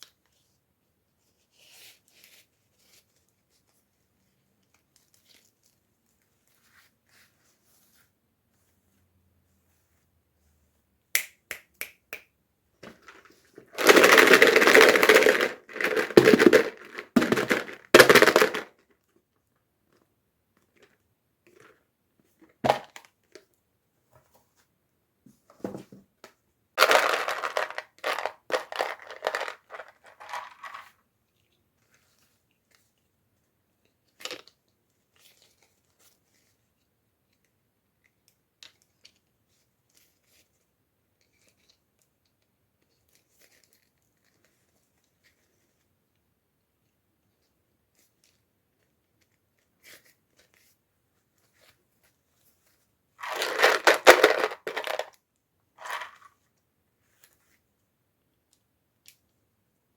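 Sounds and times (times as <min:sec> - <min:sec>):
packaging rustling and crackling: 0:13.0 - 0:18.7, 0:53.2 - 0:55.1.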